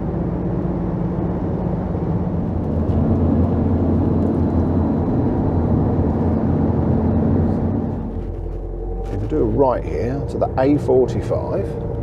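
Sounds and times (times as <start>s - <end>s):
engine and road noise in cab: 0.0s - 12.0s.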